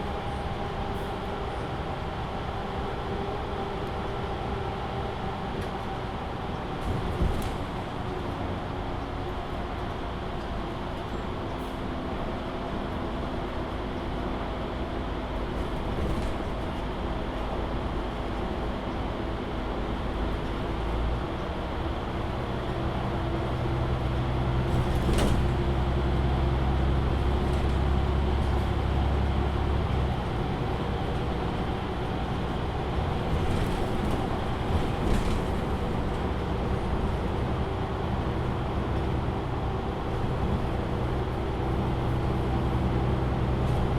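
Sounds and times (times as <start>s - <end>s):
bus diesel engine running: 0.0s - 43.9s
tyre and road noise: 5.0s - 9.9s, 15.4s - 18.7s, 21.5s - 43.9s.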